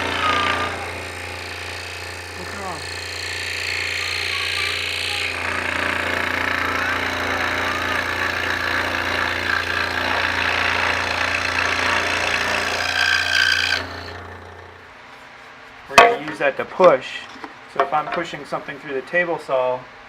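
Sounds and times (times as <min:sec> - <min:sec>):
saw blade cutting wood: 0:00.0 - 0:14.8
power saw motor hum: 0:00.0 - 0:14.9.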